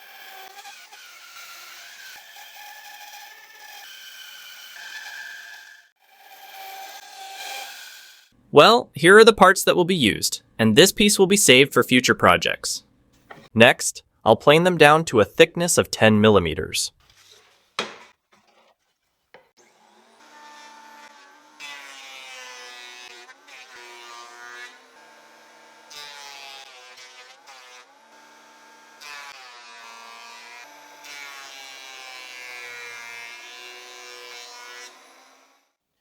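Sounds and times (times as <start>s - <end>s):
thickness planer cutting wood: 0.0s - 8.3s, 19.4s - 35.6s.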